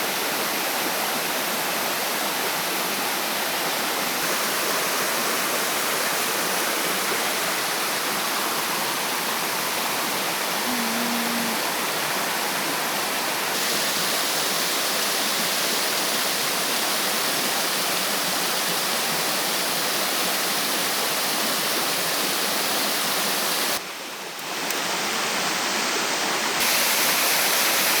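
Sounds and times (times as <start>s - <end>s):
waterfall pouring: 26.6s - 28.0s.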